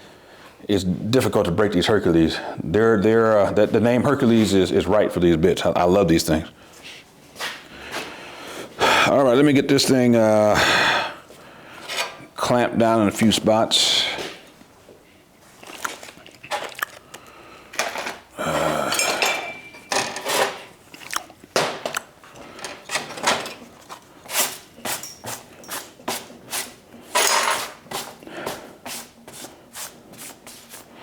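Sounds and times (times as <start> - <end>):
metal clamps clanking: 18.9 - 20.7.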